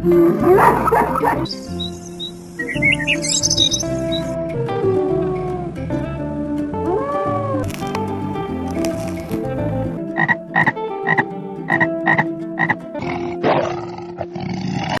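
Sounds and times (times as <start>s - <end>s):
background music: 0.0s - 15.0s
frog croaking: 10.1s - 13.8s.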